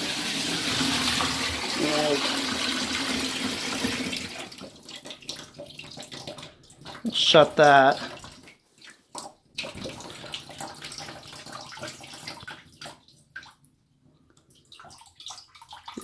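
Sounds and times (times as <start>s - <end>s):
water splashing into bathtub: 0.0s - 13.8s, 14.4s - 16.0s.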